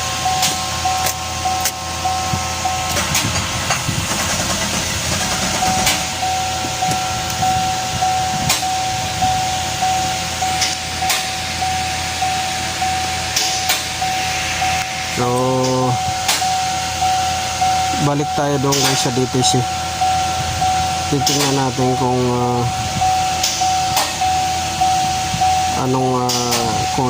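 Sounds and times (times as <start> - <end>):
low rough rumble: 0.0 - 18.4
electronic beeper tones: 4.9 - 27.0.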